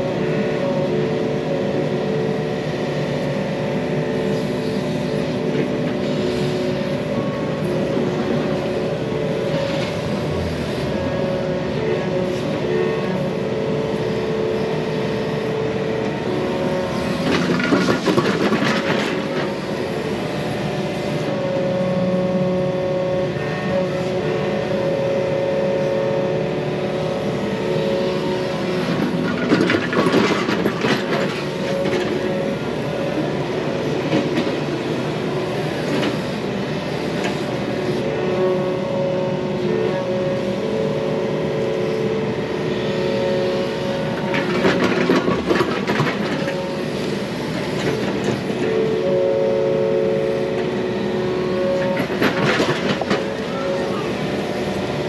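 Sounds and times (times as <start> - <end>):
diesel engine running: 0.0 - 55.0
excavator clattering and scraping: 4.2 - 14.2, 16.0 - 21.3, 27.8 - 38.5, 41.6 - 49.0, 50.4 - 55.0.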